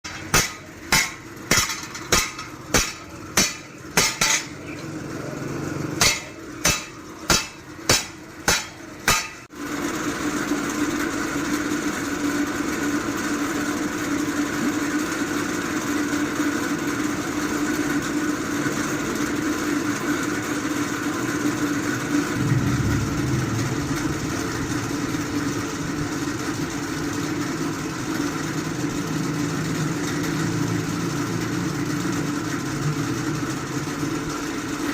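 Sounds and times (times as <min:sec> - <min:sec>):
hammer blows on metal: 0:06.0 - 0:09.5
machine humming: 0:21.9 - 0:30.1.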